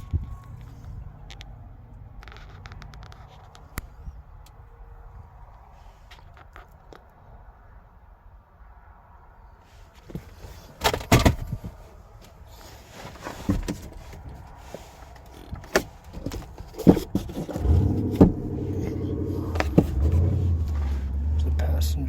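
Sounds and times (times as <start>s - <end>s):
clicks and knocks inside car: 10.1s - 21.2s.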